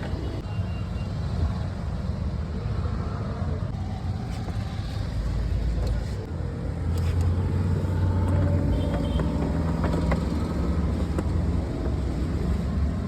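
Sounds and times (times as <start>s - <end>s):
vehicle engine rumbling: 0.0s - 13.0s.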